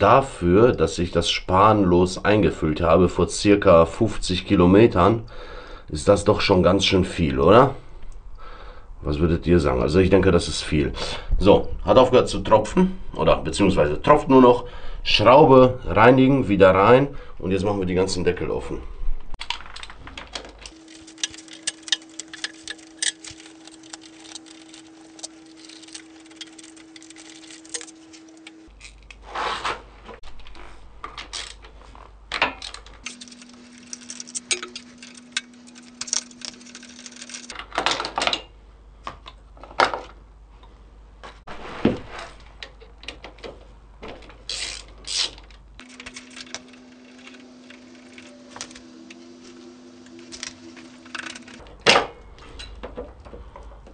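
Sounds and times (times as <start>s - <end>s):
hand tools clinking on metal: 32.4s - 37.6s.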